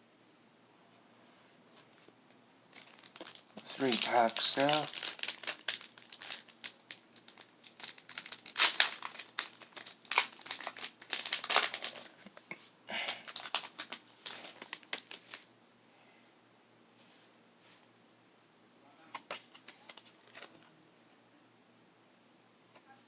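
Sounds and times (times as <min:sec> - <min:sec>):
foil wrapper crinkling and tearing: 0:02.7 - 0:12.3, 0:12.9 - 0:15.5.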